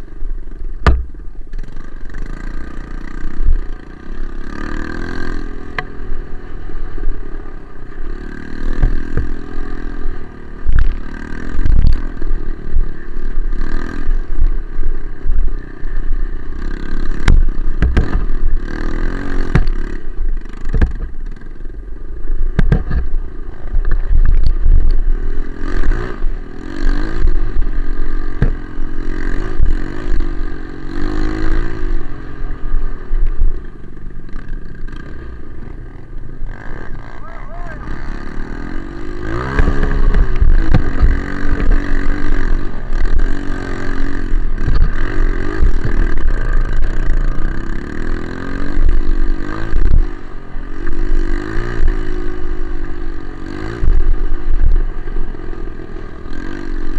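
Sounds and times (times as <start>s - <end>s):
motorcycle engine revving: 0.0s - 56.9s.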